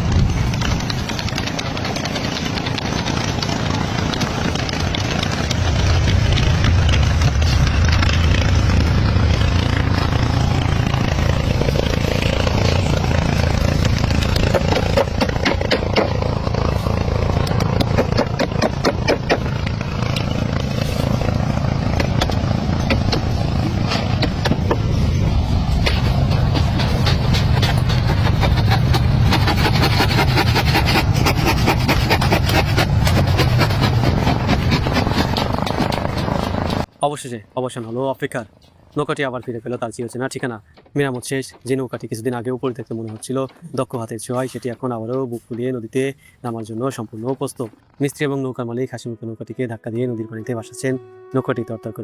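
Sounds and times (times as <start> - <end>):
engine running: 0.0 - 36.9
sharp knocks: 17.4 - 20.3.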